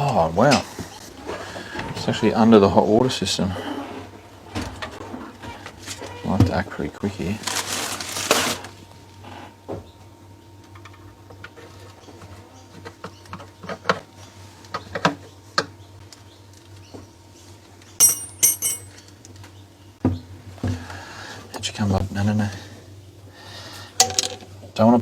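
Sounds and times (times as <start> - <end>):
hard objects knocking and clinking: 18.0 - 18.9.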